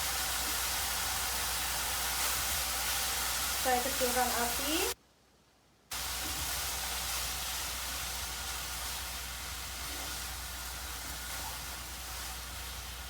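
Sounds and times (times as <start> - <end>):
noodles sizzling in pan: 0.0 - 5.0, 5.9 - 13.0.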